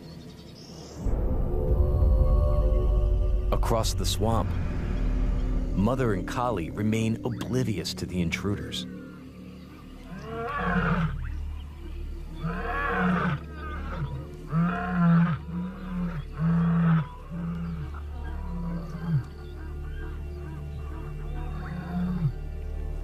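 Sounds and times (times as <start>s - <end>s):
lion grunting calls: 3.6s - 22.4s
lion roaring: 8.6s - 22.4s.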